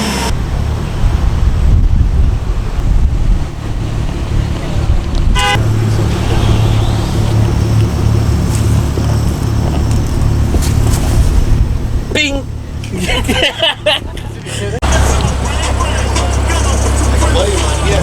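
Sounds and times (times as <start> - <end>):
car engines rumbling: 0.0 - 18.0
car horn toot: 5.3 - 7.7.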